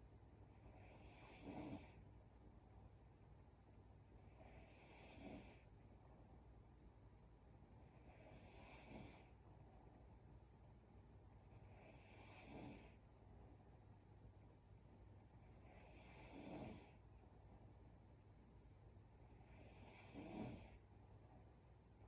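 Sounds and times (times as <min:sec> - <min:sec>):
woman snoring faintly: 0:00.8 - 0:02.0, 0:04.4 - 0:05.6, 0:15.6 - 0:17.0, 0:19.4 - 0:20.8.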